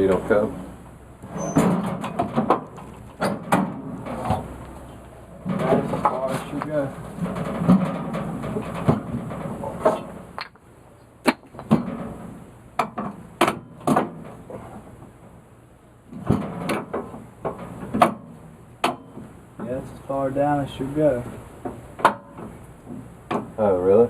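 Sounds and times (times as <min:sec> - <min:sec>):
wood knocks and clunks: 0:01.5 - 0:04.5, 0:05.4 - 0:10.6, 0:11.2 - 0:14.8, 0:16.1 - 0:19.8, 0:21.6 - 0:23.6.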